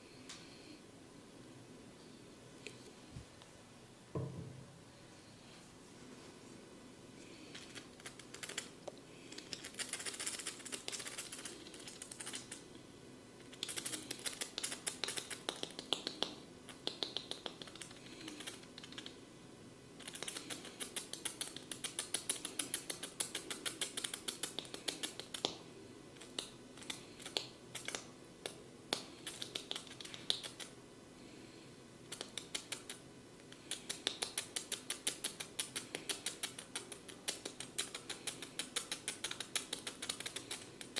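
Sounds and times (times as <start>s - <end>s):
fingers crackling on head: 7.6s - 8.7s, 9.3s - 12.6s, 13.5s - 19.2s, 20.0s - 25.6s, 26.2s - 30.7s, 32.1s - 33.0s, 33.6s - 40.9s.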